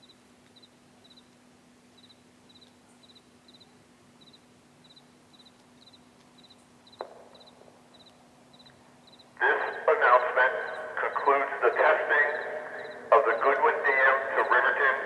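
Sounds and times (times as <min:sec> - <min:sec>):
cricket chirping: 0:02.0 - 0:13.6
low steady hum: 0:07.6 - 0:15.0.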